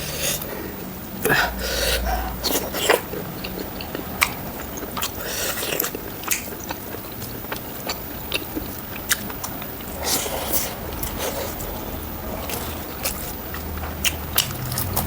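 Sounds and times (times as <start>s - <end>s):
close-miked chewing: 0.0s - 15.0s
wet mouth clicks and smacks: 6.2s - 6.8s.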